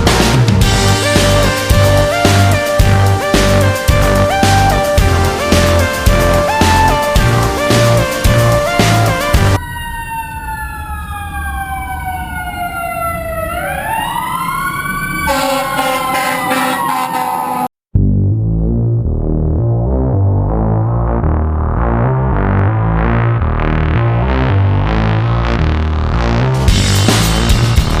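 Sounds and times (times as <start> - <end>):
looping electronic music: 0.0 - 9.6, 15.3 - 28.0
synth sweep like a siren: 7.6 - 17.7.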